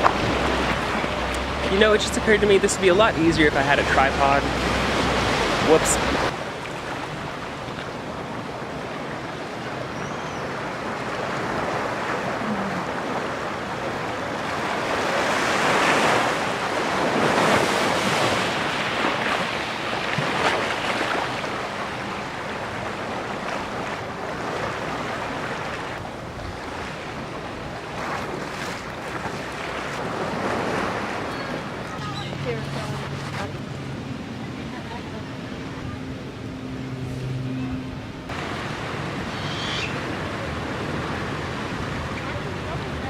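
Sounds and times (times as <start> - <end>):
ocean surf breaking: 0.0 - 43.0.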